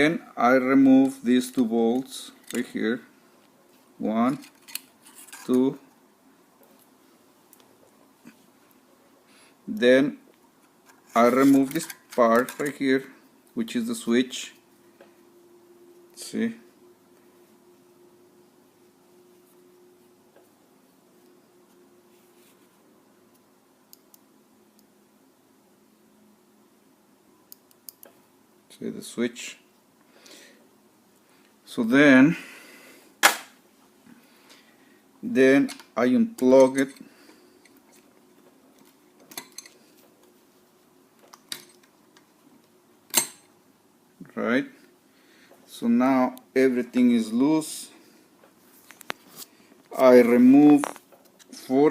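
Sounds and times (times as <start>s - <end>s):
low steady hum: 0.0s - 51.9s
faint clicks handling small parts: 1.9s - 2.8s, 4.3s - 5.8s, 10.6s - 12.8s.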